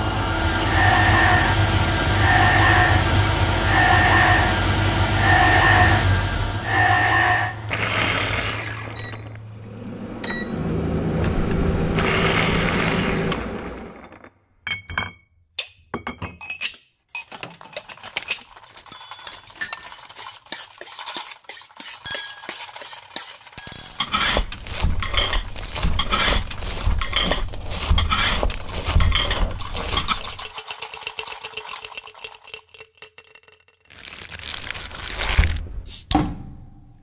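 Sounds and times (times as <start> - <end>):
cutlery clinking and clattering: 14.7 - 33.8.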